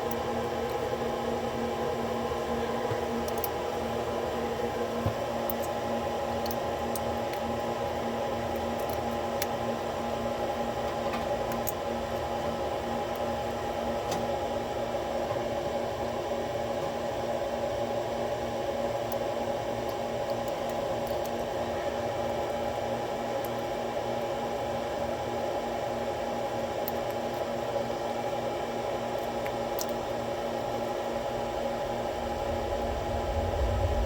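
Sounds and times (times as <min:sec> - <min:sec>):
machine hum and hiss: 0:00.0 - 0:34.0
low pulsing tone: 0:31.6 - 0:34.0.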